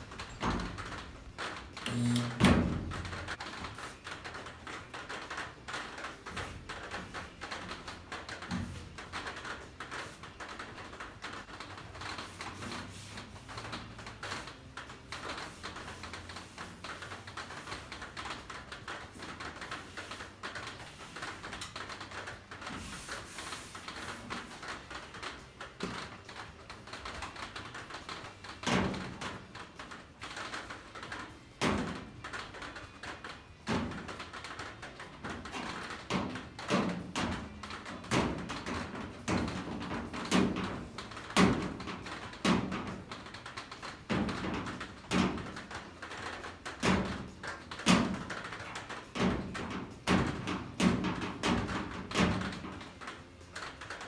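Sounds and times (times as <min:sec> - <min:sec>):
stud welder clicks and crackles: 0:00.0 - 0:54.0.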